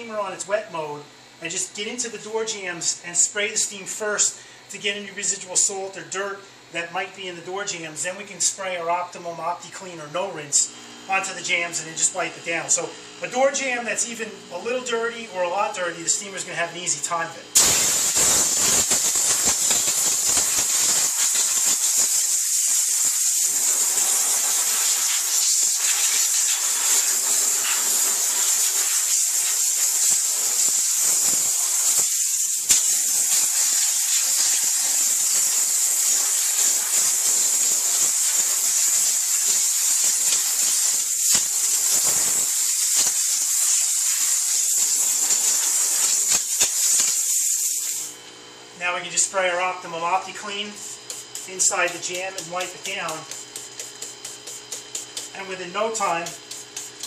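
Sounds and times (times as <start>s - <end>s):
steam jet hissing: 17.6s - 48.1s.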